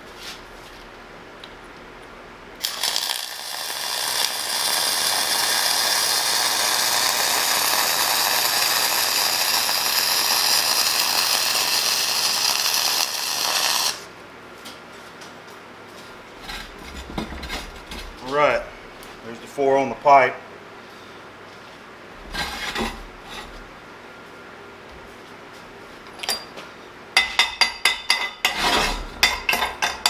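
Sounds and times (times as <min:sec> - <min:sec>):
welding arc crackling: 0:02.6 - 0:14.1.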